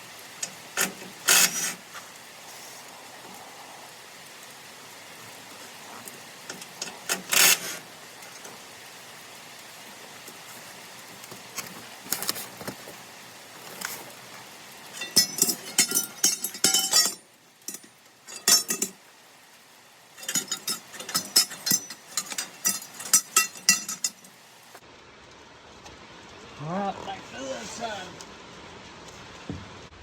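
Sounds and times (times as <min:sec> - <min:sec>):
metal parts and tools clinking: 0:00.4 - 0:01.8, 0:06.4 - 0:08.6, 0:14.9 - 0:19.0, 0:20.2 - 0:24.4.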